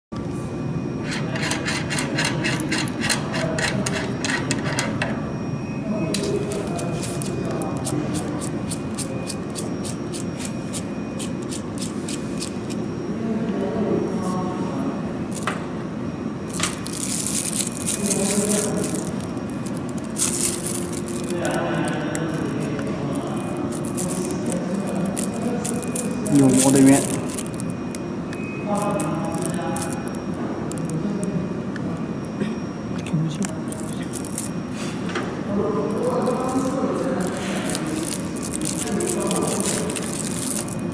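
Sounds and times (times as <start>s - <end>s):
mechanical hum: 0.1s - 40.9s
small parts and tools rattling: 6.2s - 12.8s, 16.5s - 27.7s, 28.7s - 30.9s, 33.7s - 34.5s, 36.0s - 40.9s.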